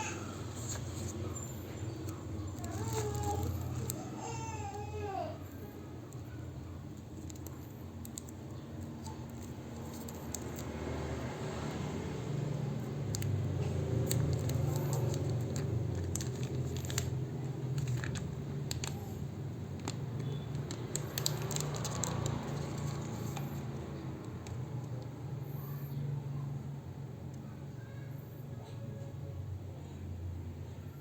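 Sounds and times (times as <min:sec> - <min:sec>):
objects clicking and rattling: 0:06.9 - 0:10.8, 0:13.0 - 0:25.1.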